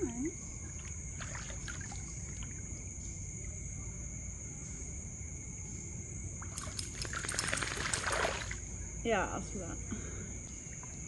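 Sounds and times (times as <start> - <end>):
water splashing: 0.7 - 2.7, 6.4 - 8.6.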